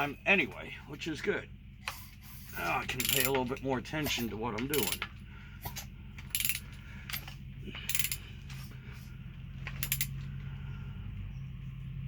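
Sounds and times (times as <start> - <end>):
steady low hum: 0.0 - 12.0
ratchet wrench clicking: 2.9 - 3.4, 4.7 - 5.1, 6.3 - 6.7, 7.9 - 8.2, 9.7 - 10.2.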